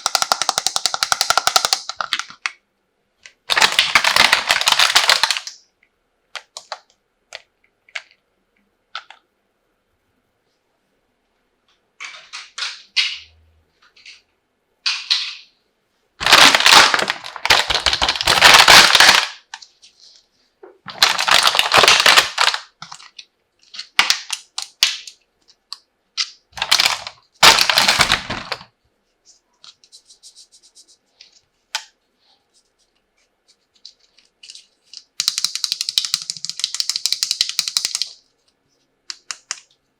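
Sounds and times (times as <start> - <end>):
packaging rustling and rattling: 3.5 - 5.5, 16.2 - 19.4, 20.9 - 23.1, 26.6 - 28.7.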